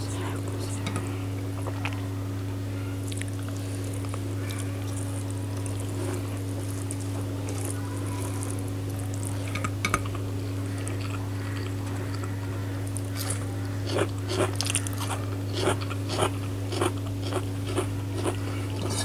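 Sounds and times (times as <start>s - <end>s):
low electrical hum: 0.0s - 19.0s
wet clicks of eating by hand: 3.0s - 5.8s.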